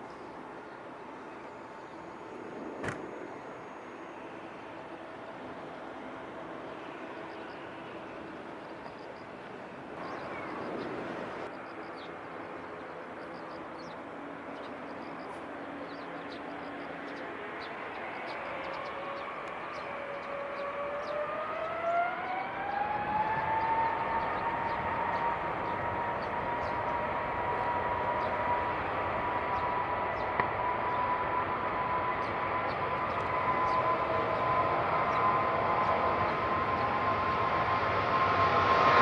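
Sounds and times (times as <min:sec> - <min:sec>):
jet engines spooling up: 0:17.7 - 0:39.0.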